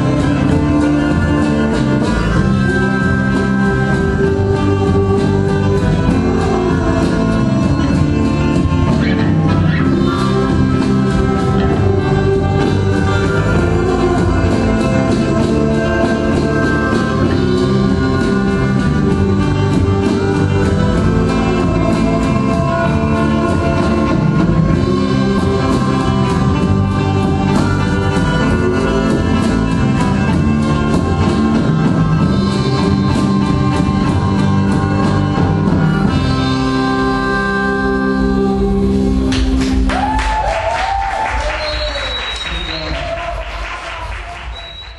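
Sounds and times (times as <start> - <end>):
guitar: 0.0 - 44.9
live band music: 0.0 - 44.9.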